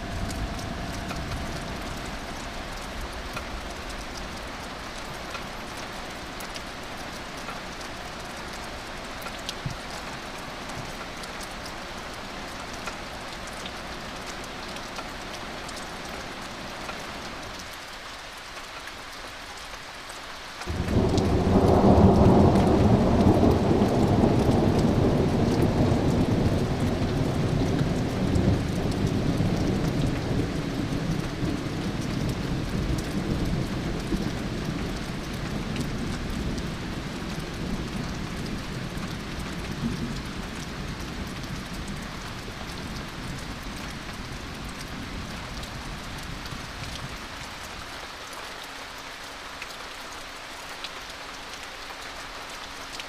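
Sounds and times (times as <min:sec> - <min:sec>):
thunder rumbling: 0:00.0 - 0:05.2, 0:20.7 - 0:46.5
steady rain: 0:00.0 - 0:53.0.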